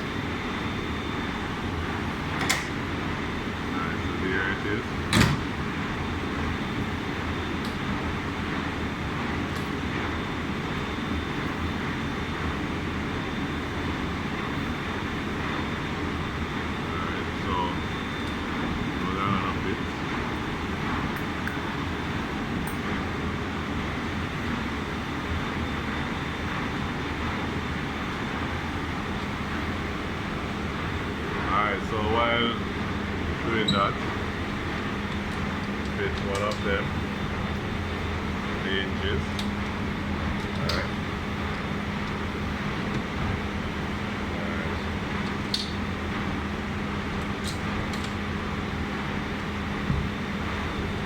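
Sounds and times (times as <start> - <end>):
machine room hum: 0.0 - 51.0
faint high whine: 13.1 - 22.8
ventilation rushing drone: 15.4 - 21.2, 28.2 - 45.2.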